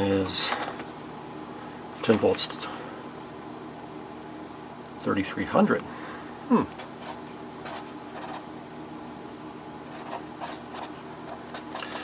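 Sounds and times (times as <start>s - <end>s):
steady low hum: 0.0s - 12.0s
pen scratching on paper: 7.0s - 8.4s, 9.9s - 11.8s.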